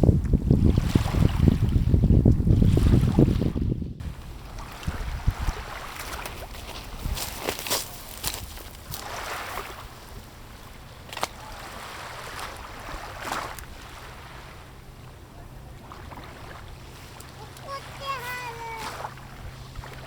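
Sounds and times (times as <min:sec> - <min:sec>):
wind on microphone: 0:00.0 - 0:10.7
lake water lapping: 0:00.0 - 0:20.0
water swishing swells: 0:00.0 - 0:20.0.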